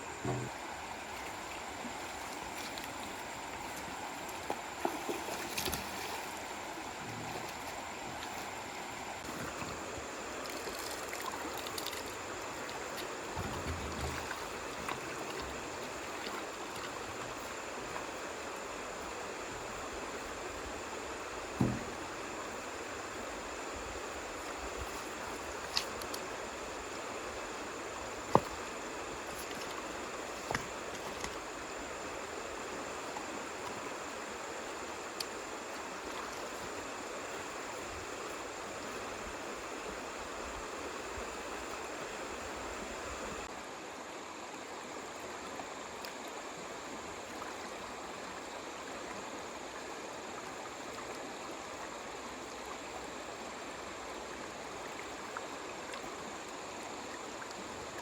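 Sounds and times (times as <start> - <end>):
running water rushing: 0.0 - 58.0
sharp knocks: 21.6 - 22.0.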